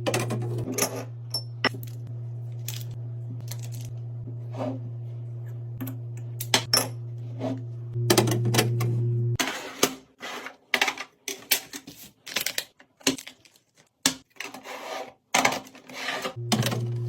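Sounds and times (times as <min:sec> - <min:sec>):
packages clicking and knocking: 0:10.7 - 0:14.6.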